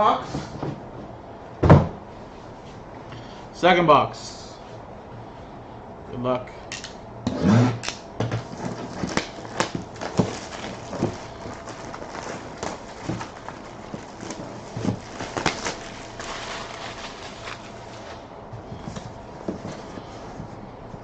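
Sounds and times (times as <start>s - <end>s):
packaging rustling: 8.4s - 20.1s.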